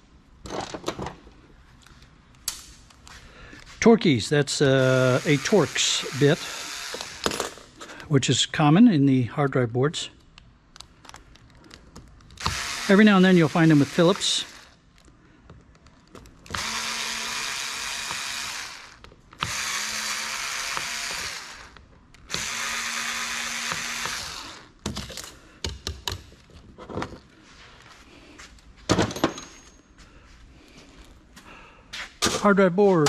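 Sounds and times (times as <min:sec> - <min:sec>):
power screwdriver whirring: 0:04.9 - 0:07.6, 0:12.4 - 0:14.8, 0:16.4 - 0:24.7.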